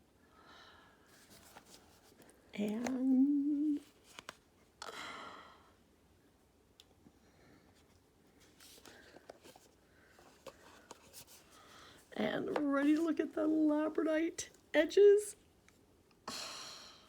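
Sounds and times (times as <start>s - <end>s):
person humming: 2.7s - 3.8s.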